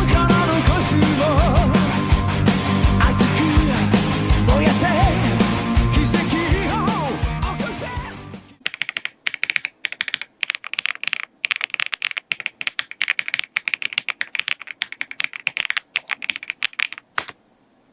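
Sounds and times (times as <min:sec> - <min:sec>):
mechanical keyboard typing: 0:08.6 - 0:17.4.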